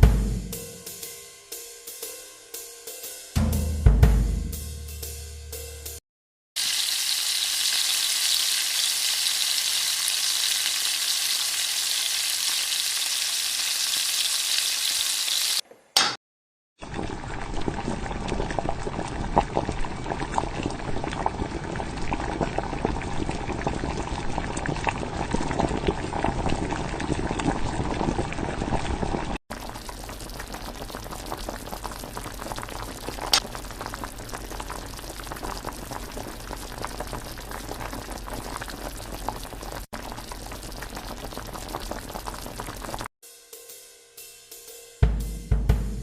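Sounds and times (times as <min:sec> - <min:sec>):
meat sizzling in a pan: 0:06.6 - 0:15.6.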